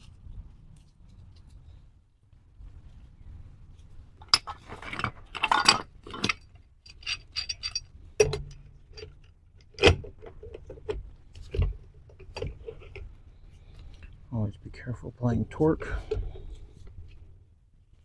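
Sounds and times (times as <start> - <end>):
metal tools clinking: 4.3 - 9.2.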